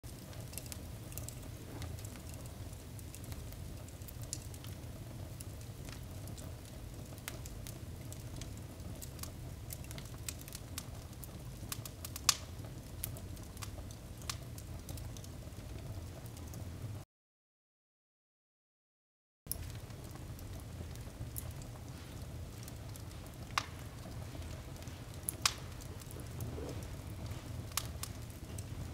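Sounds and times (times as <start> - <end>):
wood fire crackling: 0.0 - 17.0, 19.5 - 28.9
fire popping: 0.1 - 17.0, 19.5 - 28.9
low steady rumble: 19.6 - 28.9.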